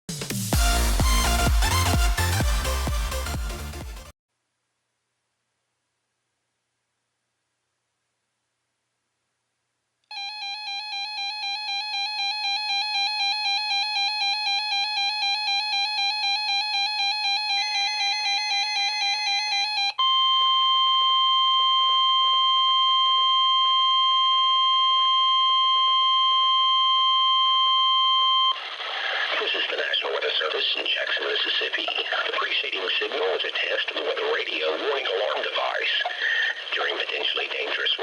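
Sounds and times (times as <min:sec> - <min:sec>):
steady alarm tone: 0:10.1 - 0:28.6
warbling electronic alarm tone: 0:10.1 - 0:28.6
faint radio static: 0:28.6 - 0:38.0.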